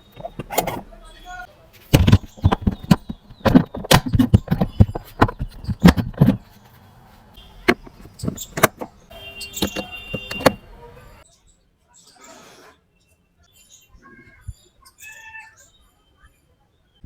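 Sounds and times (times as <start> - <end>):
hard parts clicking and knocking: 0.0 - 6.8, 7.5 - 10.8.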